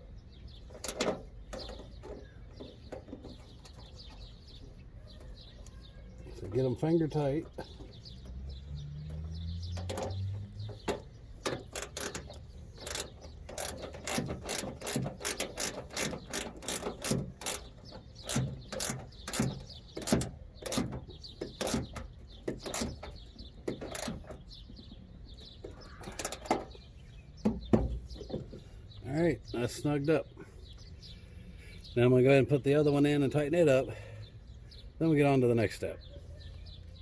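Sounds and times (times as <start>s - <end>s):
ratchet wrench clicking: 11.4s - 21.0s, 22.6s - 23.1s, 23.8s - 24.2s.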